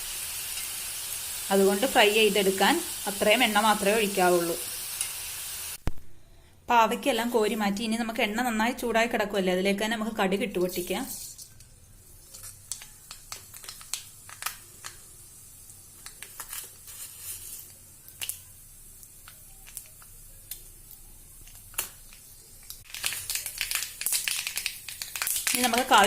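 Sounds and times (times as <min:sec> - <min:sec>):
seeds popping in hot oil: 0:12.1 - 0:26.0.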